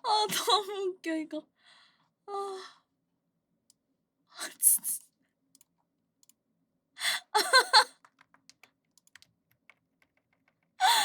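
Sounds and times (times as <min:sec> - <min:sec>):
computer keyboard typing: 0:07.9 - 0:10.8.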